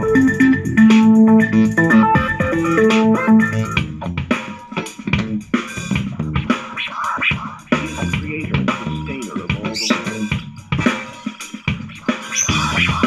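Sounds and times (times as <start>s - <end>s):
song through bluetooth speaker: 0.8s - 3.8s.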